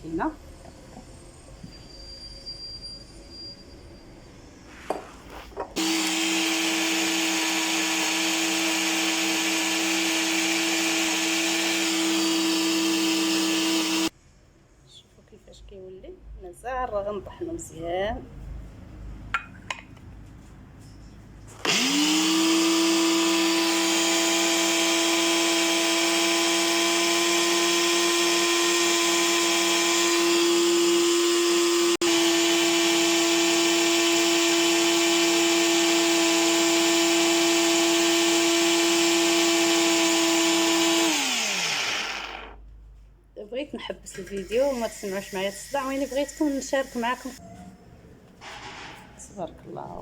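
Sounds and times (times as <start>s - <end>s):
electric grinder motor: 5.8s - 14.1s, 21.6s - 42.6s.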